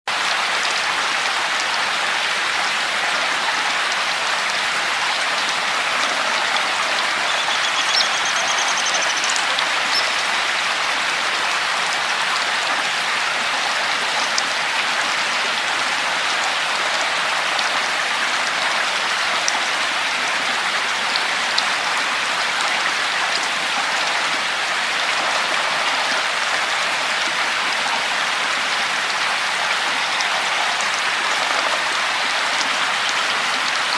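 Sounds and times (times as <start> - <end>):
steady rain: 0.1 - 33.9
bird call: 6.0 - 10.6.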